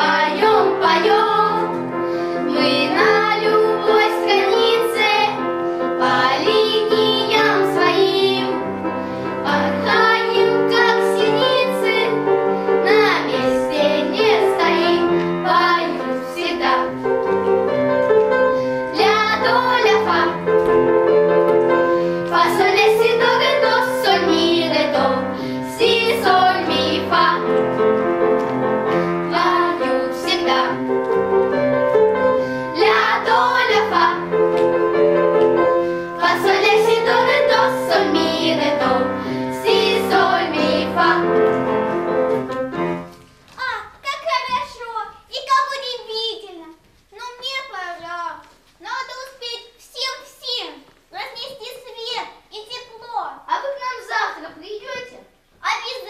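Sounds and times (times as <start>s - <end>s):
children singing together: 0.0s - 17.0s, 18.8s - 20.7s, 22.1s - 28.0s, 28.8s - 31.0s, 32.4s - 34.8s, 35.9s - 41.9s
instrumental accompaniment: 0.0s - 43.6s.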